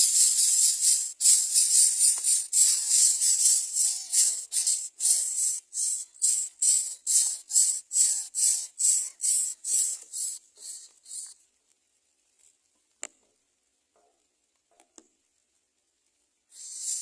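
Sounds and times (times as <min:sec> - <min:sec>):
rhythmic raspy hisses: 0:00.0 - 0:11.4, 0:16.5 - 0:17.0.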